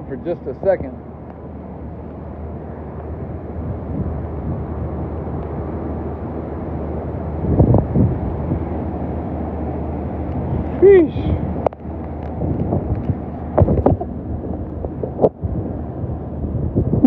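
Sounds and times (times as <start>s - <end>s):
hurricane wind blowing: 0.0s - 17.0s
low rumbling wind gust: 0.0s - 17.0s.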